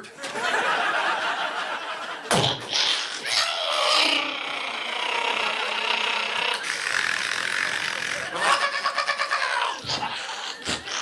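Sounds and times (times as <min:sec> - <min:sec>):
man growling into microphone: 0:03.6 - 0:08.7.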